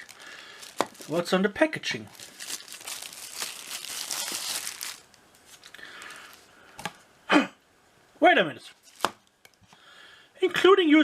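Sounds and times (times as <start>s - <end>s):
packaging crinkling and rustling: 0.0s - 6.5s, 8.8s - 9.3s.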